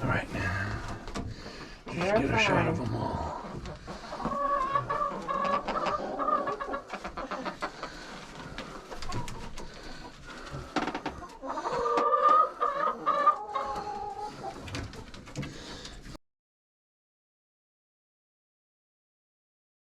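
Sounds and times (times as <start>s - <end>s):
hens clucking and calling: 0.0s - 16.0s.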